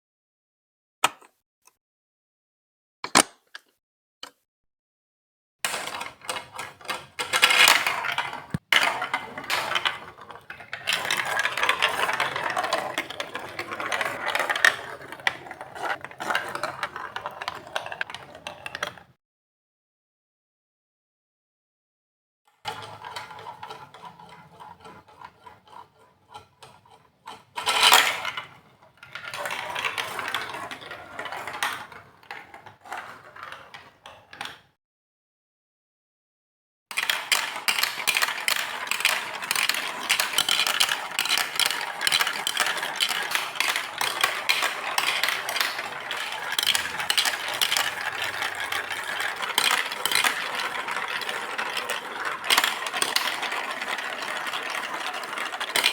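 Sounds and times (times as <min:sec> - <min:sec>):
marbles clattering on plastic track: 0:05.7 - 0:19.1, 0:22.7 - 0:34.6, 0:36.9 - 0:55.9.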